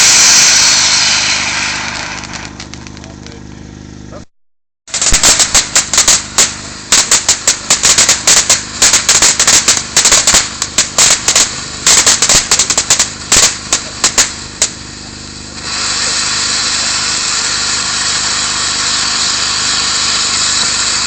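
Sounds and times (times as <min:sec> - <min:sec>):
steady low hum: 0:00.0 - 0:04.3, 0:04.9 - 0:21.0
hot oil spitting and popping: 0:04.9 - 0:21.0.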